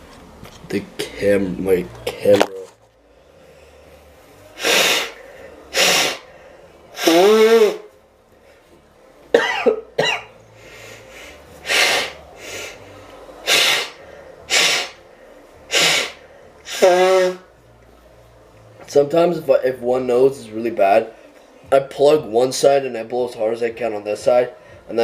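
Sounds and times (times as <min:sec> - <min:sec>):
man blowing his nose: 0:04.6 - 0:06.3, 0:06.9 - 0:07.9, 0:10.6 - 0:12.8, 0:13.4 - 0:15.0, 0:15.7 - 0:17.5.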